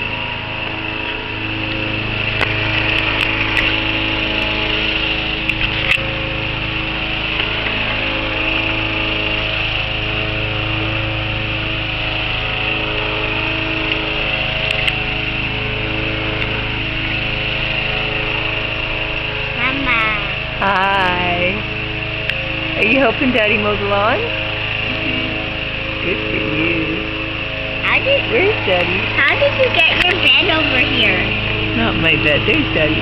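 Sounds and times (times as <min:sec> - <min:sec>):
lawn mower engine running: 0:00.0 - 0:33.0.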